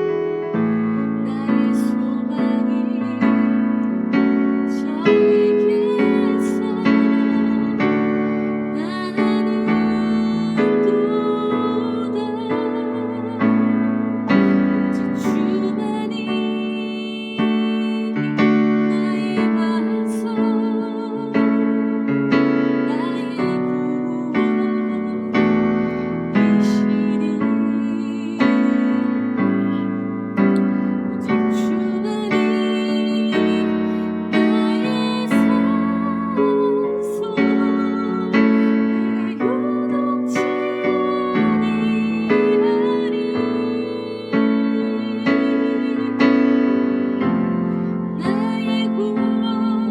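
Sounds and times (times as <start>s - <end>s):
electric keyboard playing a hymn: 0.0s - 49.9s.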